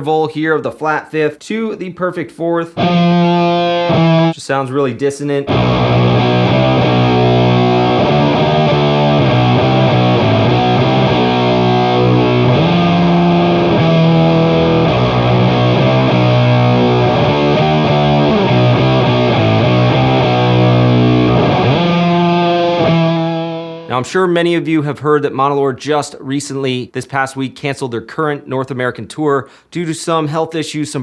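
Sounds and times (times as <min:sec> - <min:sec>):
distorted electric guitar riff: 0:02.8 - 0:04.4, 0:05.5 - 0:24.0.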